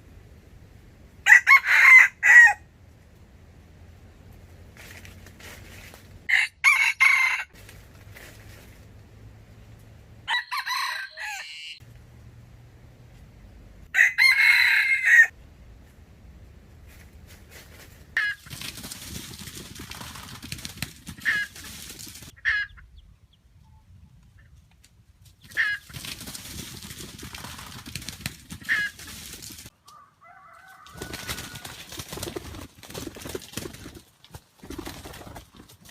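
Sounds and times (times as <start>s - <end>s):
rooster crowing: 1.2s - 2.6s, 6.3s - 7.6s, 10.2s - 11.8s, 13.9s - 15.4s, 29.8s - 31.9s
rustling: 4.4s - 6.3s, 7.6s - 9.1s, 15.8s - 22.3s, 24.5s - 30.0s.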